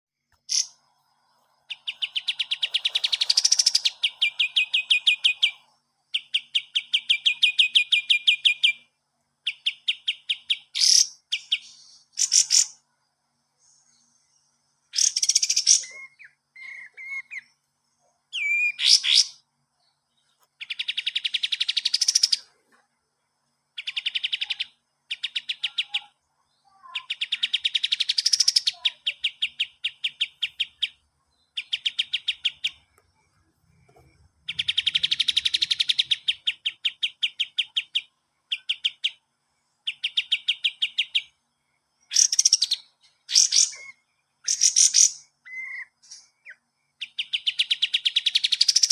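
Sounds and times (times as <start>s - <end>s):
songbird rattling trills: 1.7s - 5.6s.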